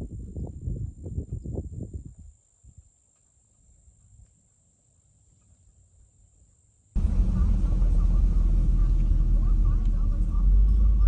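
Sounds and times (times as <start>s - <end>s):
car driving low rumble: 7.0s - 11.0s.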